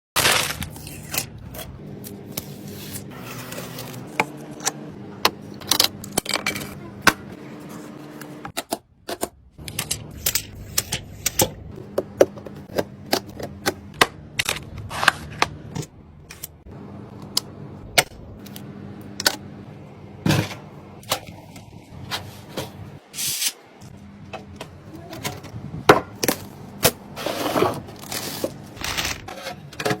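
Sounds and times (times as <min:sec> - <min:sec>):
computer parts clicking and clattering: 0:08.5 - 0:15.2.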